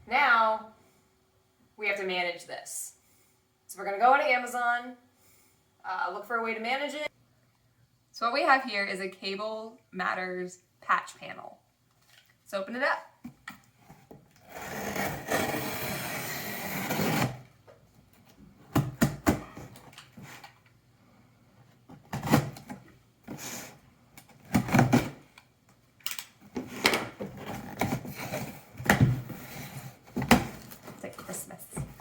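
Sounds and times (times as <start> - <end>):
cardboard packaging scraping: 14.4 - 17.4.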